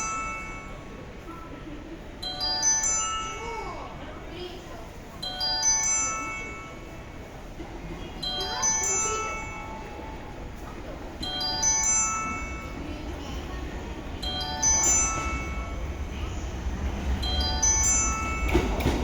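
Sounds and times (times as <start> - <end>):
bell-like station chime: 0.0 - 1.0, 2.2 - 3.8, 5.2 - 7.2, 8.2 - 10.4, 11.2 - 13.0, 14.2 - 16.2, 17.2 - 18.8.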